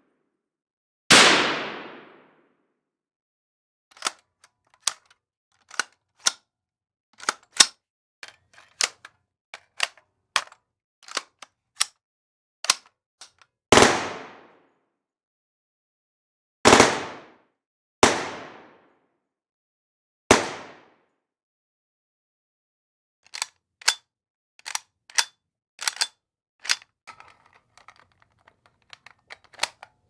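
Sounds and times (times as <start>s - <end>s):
sharp clicks and clacks: 24.6s - 30.0s.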